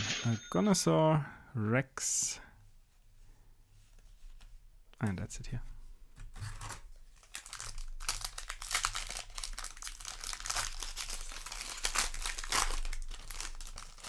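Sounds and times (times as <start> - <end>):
foil wrapper crinkling: 6.6 - 14.0.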